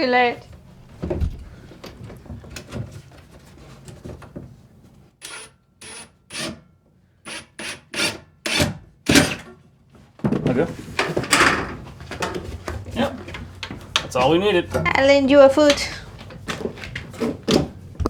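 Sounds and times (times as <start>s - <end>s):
short rasping scrapes: 7.3s - 8.7s.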